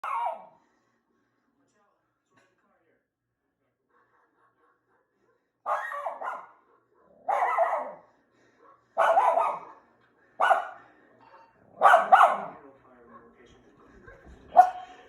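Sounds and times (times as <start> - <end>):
dog barking: 0.0 - 0.6, 3.9 - 10.8, 11.7 - 13.3, 14.5 - 15.0.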